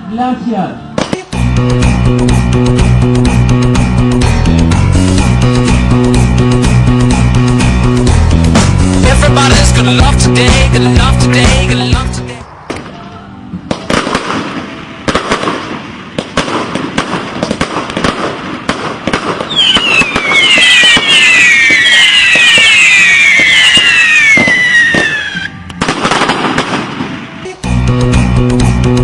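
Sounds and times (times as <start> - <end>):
music with guitar and bass: 1.4 - 13.7, 27.6 - 29.0
fireworks crackling bangs: 13.6 - 27.6
fireworks whistles falling in pitch: 19.5 - 25.6.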